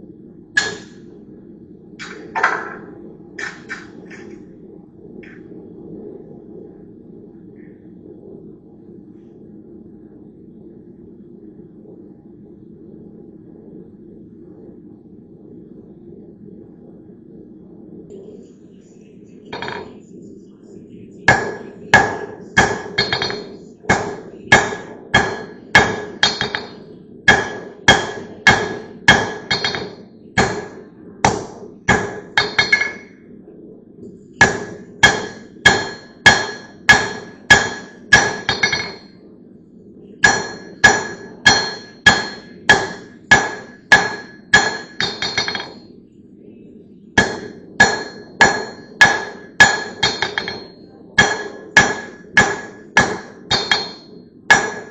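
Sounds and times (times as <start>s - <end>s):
hammer striking steel: 0.6s - 1.0s, 19.6s - 20.0s, 21.3s - 33.1s, 34.4s - 39.1s, 40.2s - 45.8s, 47.2s - 54.9s.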